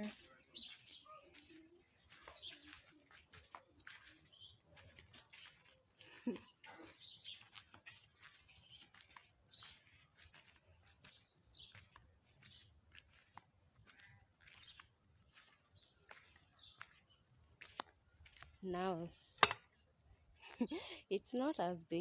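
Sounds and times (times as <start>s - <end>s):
faint bird chirps: 0.0s - 12.7s.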